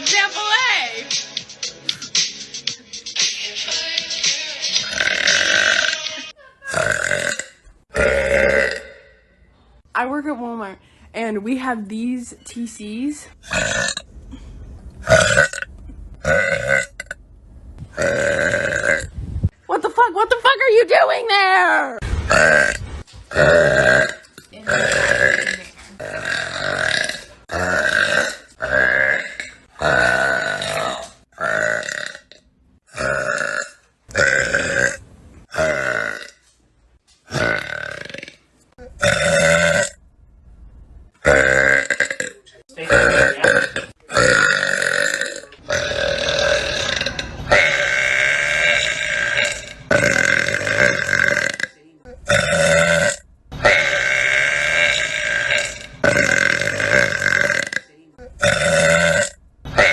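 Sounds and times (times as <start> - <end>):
person burping: 4.8 - 6.1, 6.7 - 9.3, 13.4 - 17.2, 17.9 - 19.1, 22.3 - 36.4, 37.3 - 40.0, 41.2 - 59.9.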